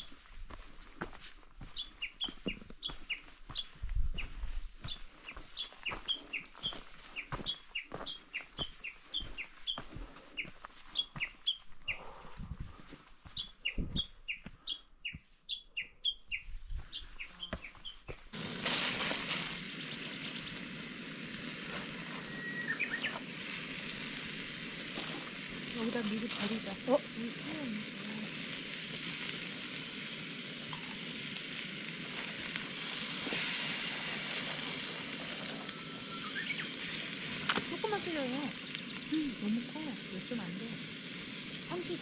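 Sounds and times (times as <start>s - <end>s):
birds calling with high notes: 1.7s - 12.2s, 13.3s - 18.2s, 22.0s - 23.2s, 35.6s - 37.1s, 37.8s - 39.6s
food sizzling: 18.1s - 42.0s.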